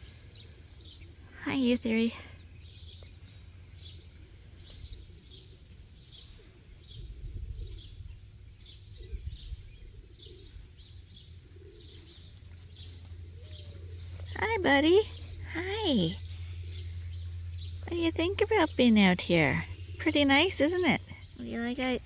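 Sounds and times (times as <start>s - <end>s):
small bird chirping: 0.0s - 22.0s
faint low rumble: 12.2s - 22.0s.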